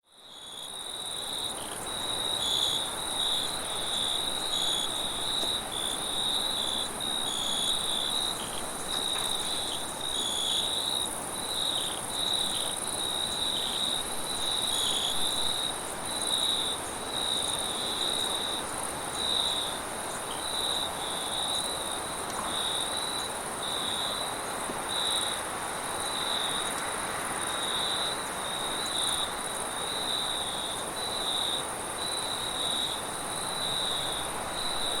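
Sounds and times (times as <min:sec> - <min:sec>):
crickets chirping: 0:00.1 - 0:35.0.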